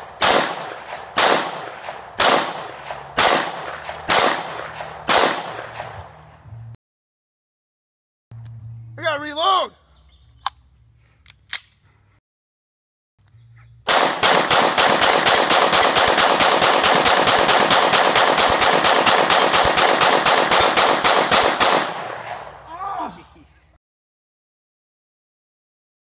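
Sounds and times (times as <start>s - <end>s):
pistol shots in rapid succession: 0.0s - 6.0s, 13.9s - 22.6s.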